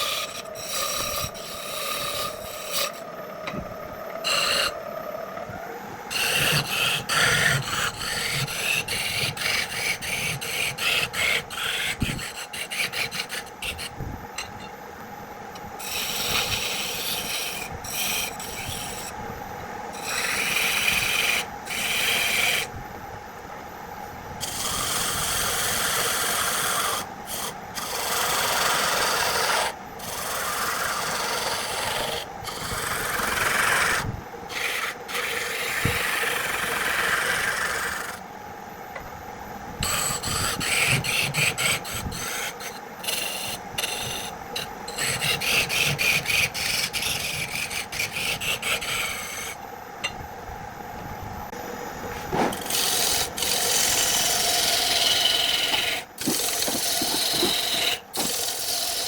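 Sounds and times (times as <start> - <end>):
hand tools rasping on wood: 6.1 - 13.9, 39.8 - 49.6, 52.5 - 59.0.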